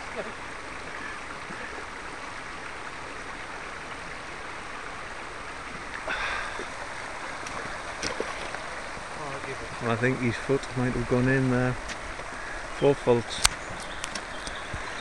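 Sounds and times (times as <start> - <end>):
river rushing: 0.0 - 15.0
water splash: 5.8 - 9.7.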